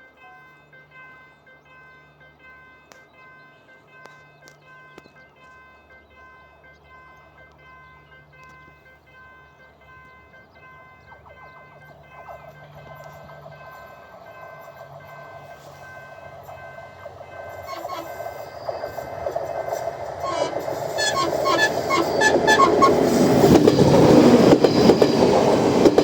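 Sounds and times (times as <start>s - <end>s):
train wheels on rails: 0.3s - 26.0s
wheels clicking over rail joints: 8.3s - 26.0s.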